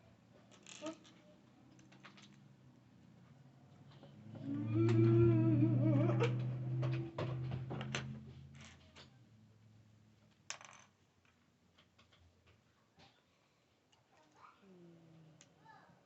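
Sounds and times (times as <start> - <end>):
person humming: 4.4 - 7.2.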